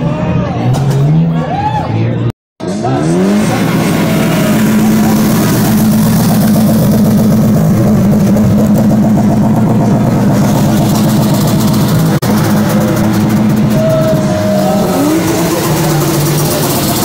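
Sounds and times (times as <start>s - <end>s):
car engine revving: 2.6s - 17.0s.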